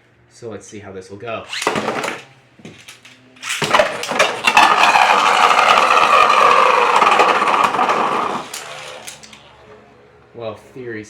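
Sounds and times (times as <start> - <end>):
spinning tops clattering: 1.5 - 9.4
spinning tops whirring grind: 1.5 - 9.5.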